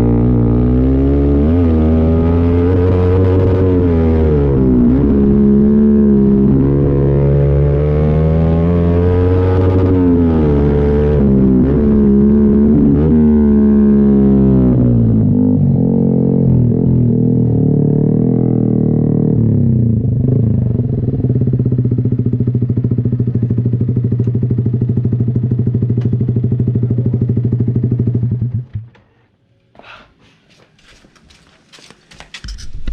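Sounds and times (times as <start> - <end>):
motorcycle engine revving and idling: 0.0 - 29.0.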